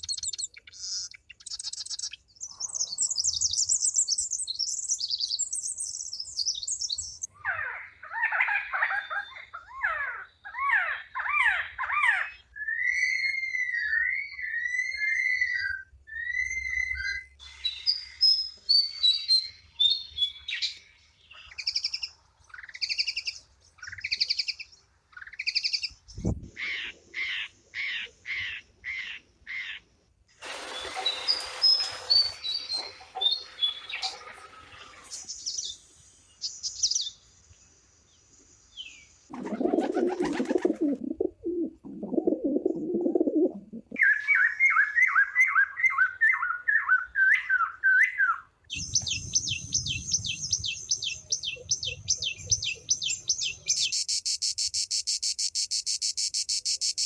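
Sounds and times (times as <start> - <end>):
bird chirps and whistled notes: 0.0 - 7.3, 11.4 - 24.7, 30.8 - 34.3, 35.1 - 37.2, 44.0 - 57.0
low rough bird calls: 7.2 - 37.1, 38.8 - 54.0.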